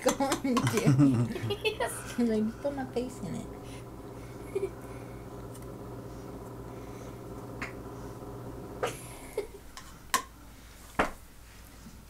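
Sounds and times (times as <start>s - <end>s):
low hum: 1.2s - 9.5s.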